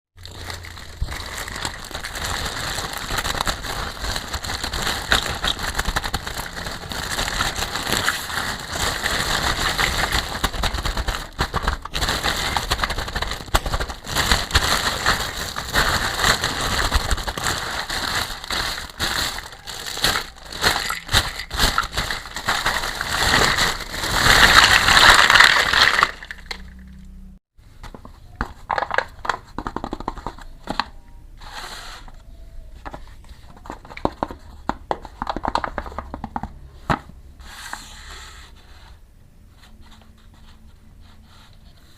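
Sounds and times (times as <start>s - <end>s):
packaging crinkling and tearing: 0.2s - 26.7s.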